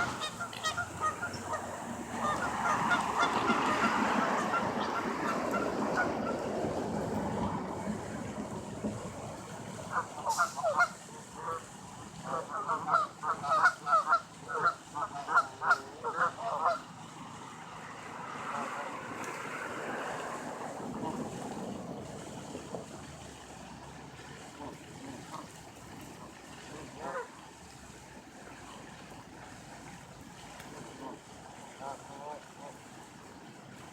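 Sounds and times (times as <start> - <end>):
geese honking: 0.0 - 6.5, 9.9 - 11.7, 12.3 - 16.9.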